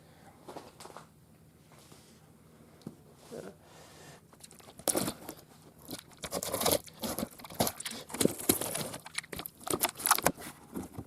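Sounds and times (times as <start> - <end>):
packaging crinkling and tearing: 4.6 - 11.0.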